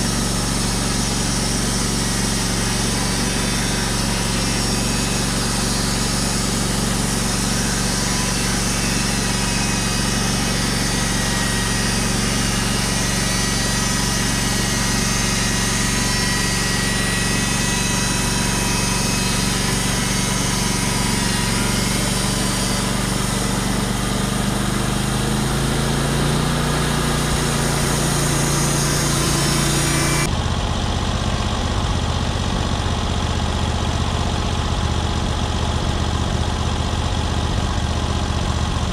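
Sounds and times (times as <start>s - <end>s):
high hiss of saw cutting log: 0.0s - 30.3s
sawmill engine running: 0.0s - 38.9s.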